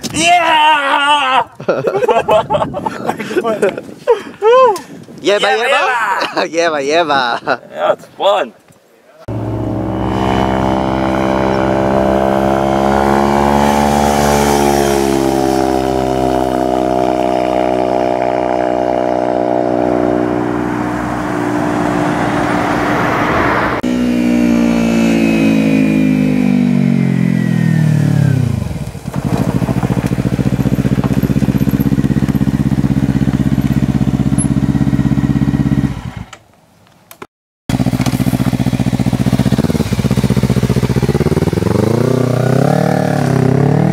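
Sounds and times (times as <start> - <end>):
motorcycle engine revving: 9.3 - 36.3, 37.7 - 43.9.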